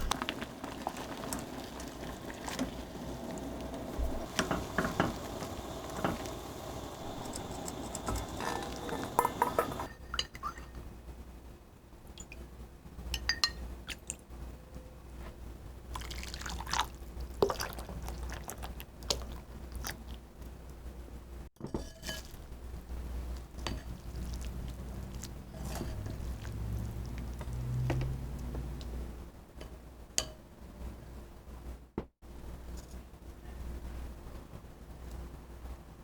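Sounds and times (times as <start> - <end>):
small liquid sounds: 0.0 - 10.7, 15.9 - 20.7, 23.3 - 27.8
low steady hum: 0.0 - 11.5
utensils clinking on dishes: 4.2 - 10.8.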